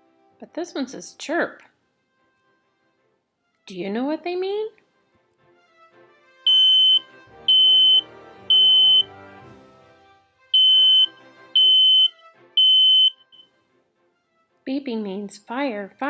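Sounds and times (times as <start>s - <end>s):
smoke alarm beeping: 6.5s - 9.1s, 10.6s - 13.4s.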